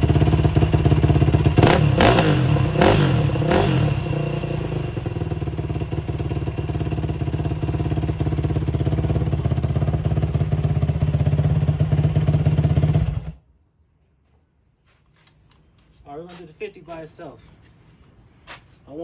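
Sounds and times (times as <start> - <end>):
motorcycle engine idling: 0.0 - 13.4.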